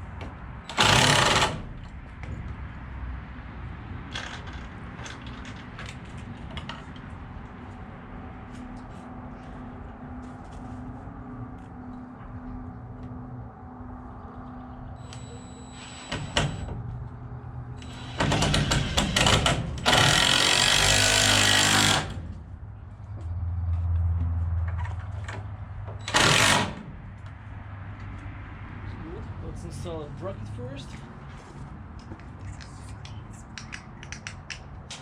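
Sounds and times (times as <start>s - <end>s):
power drill running: 0.7s - 1.6s, 17.8s - 22.2s, 26.1s - 26.7s
low hum: 7.0s - 18.0s.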